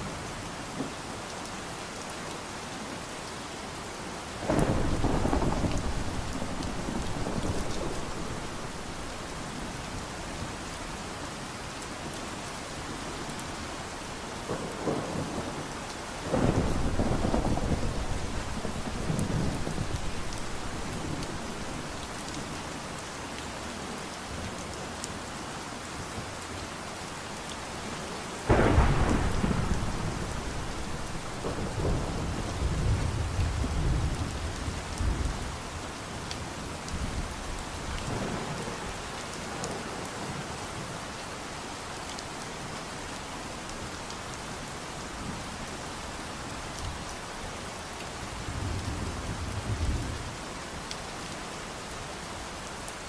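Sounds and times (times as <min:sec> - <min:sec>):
steady rain: 0:00.0 - 0:53.0
thunderclaps rumbling: 0:04.5 - 0:09.6, 0:16.3 - 0:22.5, 0:28.5 - 0:35.5.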